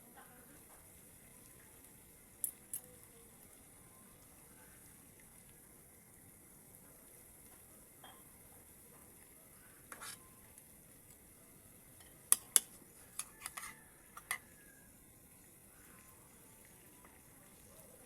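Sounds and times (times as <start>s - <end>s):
utensil clinking against cookware: 12.0s - 14.5s.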